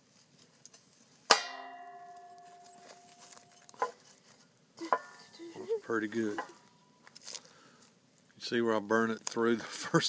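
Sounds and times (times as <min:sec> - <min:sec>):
metal clang ringing: 0:01.3 - 0:04.0, 0:04.8 - 0:05.4.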